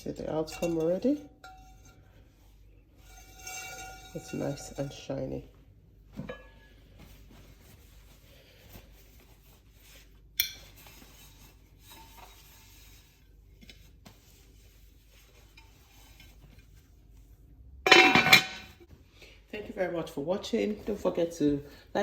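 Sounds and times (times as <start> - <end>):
cast-iron pot handling: 0.2 - 2.2, 3.0 - 5.2, 17.8 - 18.9.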